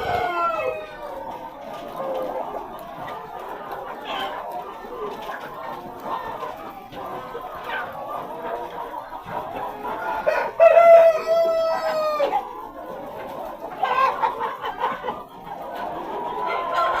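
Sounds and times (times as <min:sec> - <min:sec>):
rooster crowing: 0:00.0 - 0:00.8
chickens clucking: 0:00.0 - 0:17.0.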